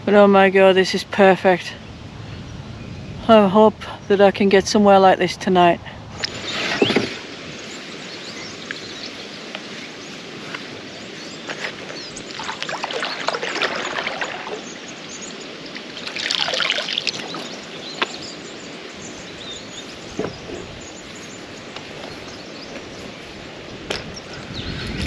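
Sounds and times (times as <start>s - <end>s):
water splashing and trickling: 11.4s - 20.7s.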